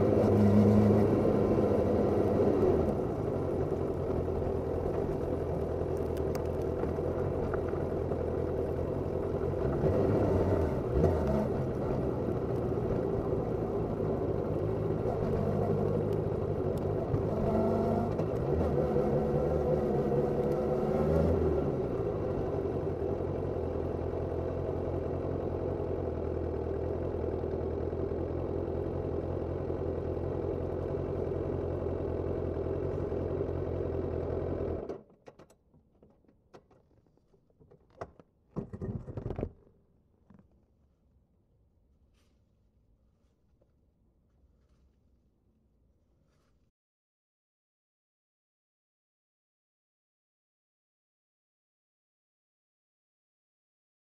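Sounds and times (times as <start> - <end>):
motorcycle engine idling and revving: 0.0 - 35.1.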